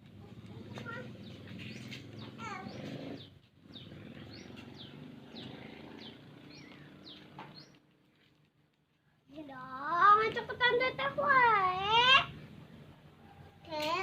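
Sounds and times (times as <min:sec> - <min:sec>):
small birds chirping: 0:00.1 - 0:09.5.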